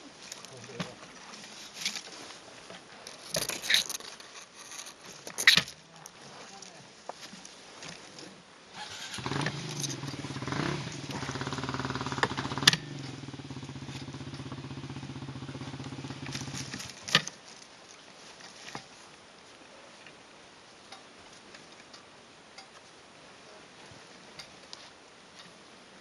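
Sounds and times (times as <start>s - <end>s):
motorcycle engine revving: 8.8s - 17.1s.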